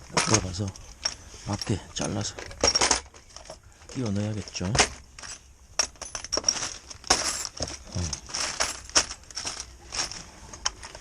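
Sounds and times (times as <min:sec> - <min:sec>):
gear clattering: 0:00.0 - 0:11.0
rustling: 0:00.0 - 0:11.0
small metal objects clicking and clinking: 0:04.8 - 0:11.0.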